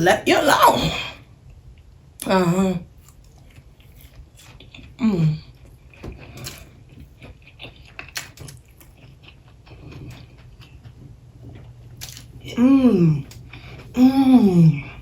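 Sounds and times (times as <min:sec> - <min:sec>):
chewing crunchy snacks: 0:03.0 - 0:14.0.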